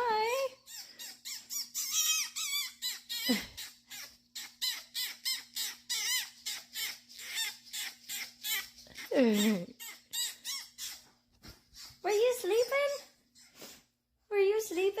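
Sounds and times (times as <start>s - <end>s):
small animal chirping squeaks: 0.3s - 11.1s.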